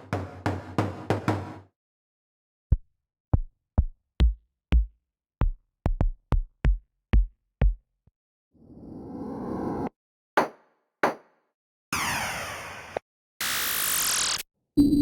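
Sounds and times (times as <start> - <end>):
retro video game drum loop: 0.0 - 1.6.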